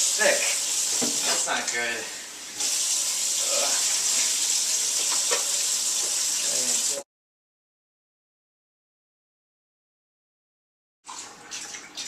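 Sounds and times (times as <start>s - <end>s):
tap water running into sink: 0.0s - 7.0s, 11.1s - 12.0s.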